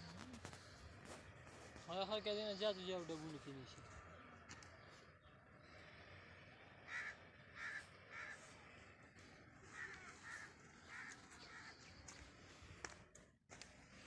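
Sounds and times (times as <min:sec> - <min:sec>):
bird cawing faintly: 0:03.4 - 0:12.9.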